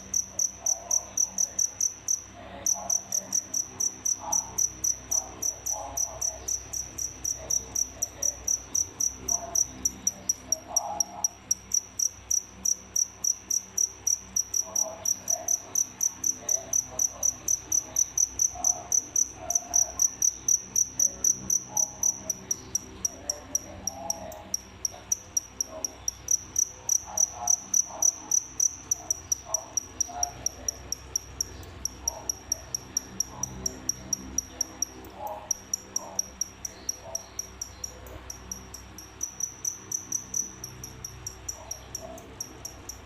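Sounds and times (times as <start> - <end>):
cricket chirping: 0.0 - 43.0.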